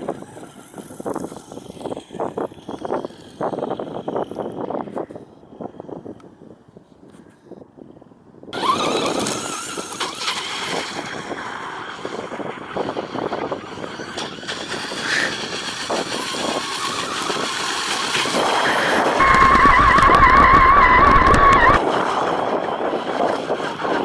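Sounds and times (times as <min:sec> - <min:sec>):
electric motor whining: 0:08.6 - 0:24.0
tyres churning and spraying water: 0:08.6 - 0:24.0.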